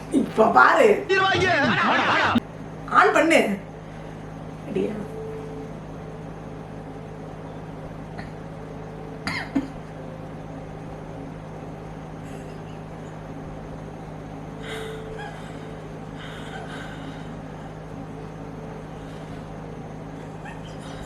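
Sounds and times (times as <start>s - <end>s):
steady low hum: 0.0s - 21.0s
person coughing: 9.3s - 9.7s.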